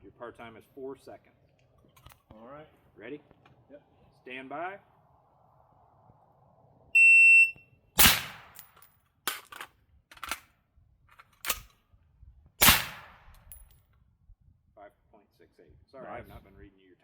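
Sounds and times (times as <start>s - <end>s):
shot timer beep: 7.0s - 7.6s
rifle shot: 8.0s - 8.8s, 12.6s - 13.6s.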